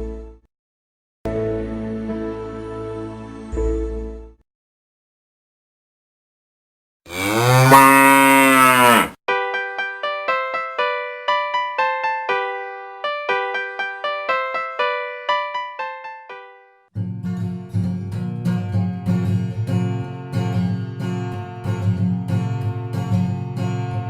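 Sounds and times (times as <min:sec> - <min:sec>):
cow mooing: 0:07.1 - 0:09.2
keyboard melody: 0:09.3 - 0:16.9.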